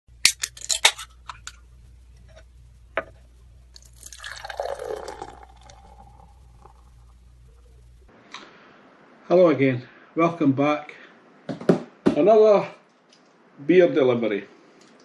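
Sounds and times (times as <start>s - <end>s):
liquid poured into a glass: 3.8s - 6.9s.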